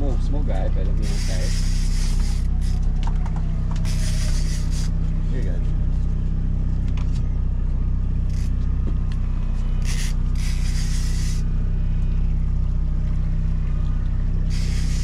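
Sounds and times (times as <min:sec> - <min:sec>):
boat engine running: 0:00.0 - 0:15.0
short hissing bursts: 0:01.0 - 0:02.8, 0:03.9 - 0:04.9, 0:09.8 - 0:11.4, 0:14.5 - 0:15.0.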